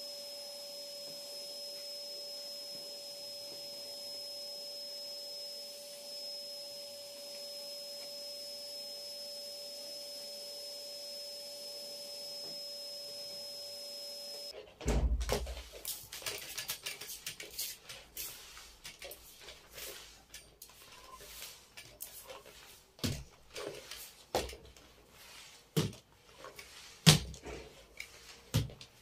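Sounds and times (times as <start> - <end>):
machine hum: 0.0 - 14.5.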